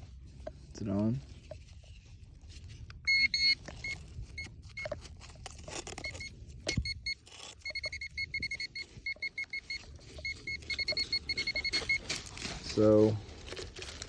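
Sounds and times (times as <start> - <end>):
faint scraping of soil: 0.0 - 2.9, 8.8 - 14.0
metal detector beeping: 3.0 - 5.0, 6.0 - 12.2.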